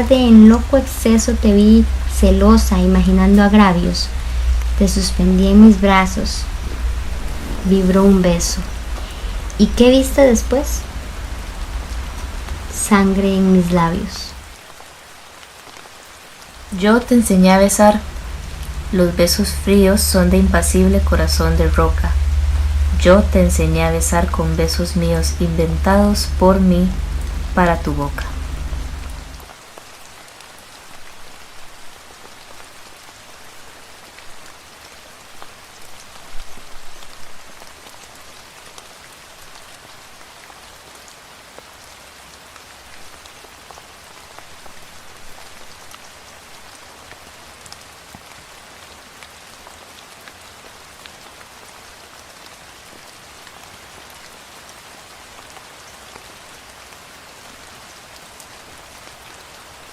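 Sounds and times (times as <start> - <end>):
steady rain falling: 0.0 - 59.9.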